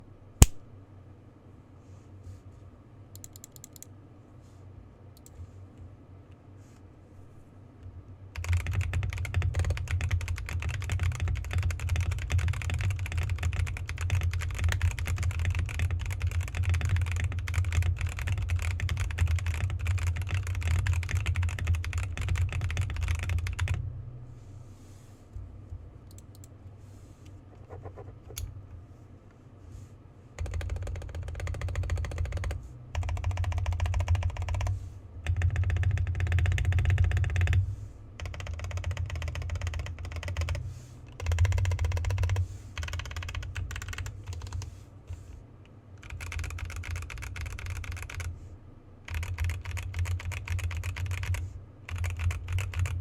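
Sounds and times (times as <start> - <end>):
mechanical keyboard typing: 8.4 - 23.8, 30.4 - 37.6, 38.2 - 44.7, 46.0 - 48.3, 49.1 - 53.0.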